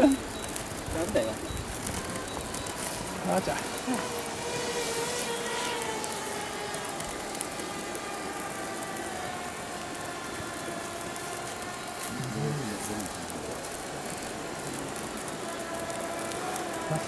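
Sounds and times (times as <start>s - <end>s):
engine drone passing by: 0.0s - 17.0s.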